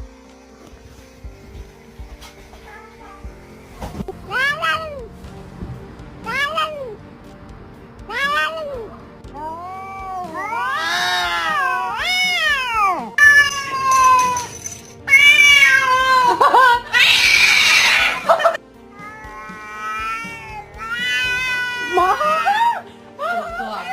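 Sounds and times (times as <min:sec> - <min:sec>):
background music: 0:00.0 - 0:23.9
cats meowing and yowling: 0:04.3 - 0:05.1, 0:06.3 - 0:07.0, 0:08.1 - 0:23.9.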